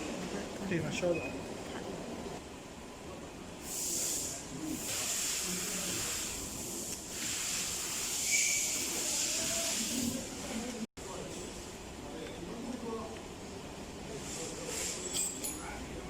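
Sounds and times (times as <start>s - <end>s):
steady hiss: 3.6s - 11.2s.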